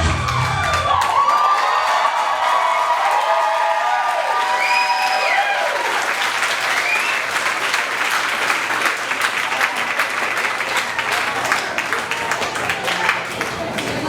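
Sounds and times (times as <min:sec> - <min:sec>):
audience applauding: 0:00.0 - 0:14.0.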